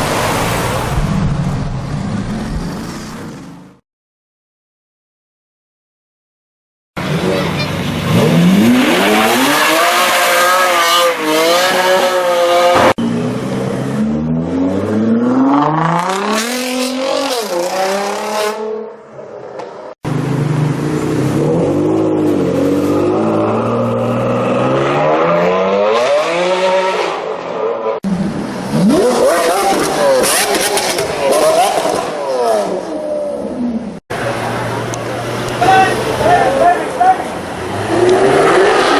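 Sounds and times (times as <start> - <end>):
car engine revving and accelerating: 7.0 - 18.9, 20.1 - 33.2, 34.1 - 38.9.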